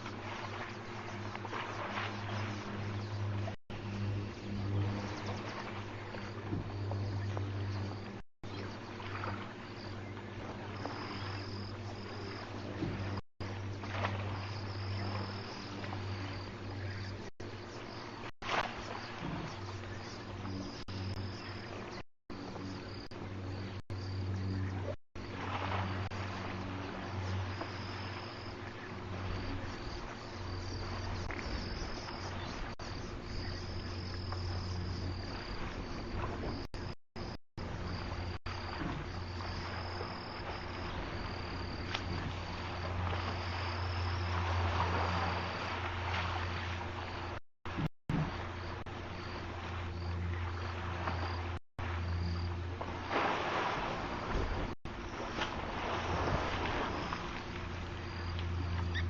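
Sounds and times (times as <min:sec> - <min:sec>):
low hum: 0:00.0 - 0:59.0
insects trilling: 0:03.8 - 0:47.4, 0:54.4 - 0:59.0.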